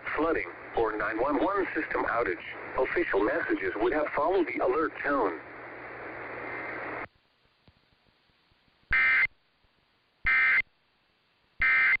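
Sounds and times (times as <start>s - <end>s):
two-tone digital data bursts: 10.3s - 10.6s, 11.6s - 12.0s.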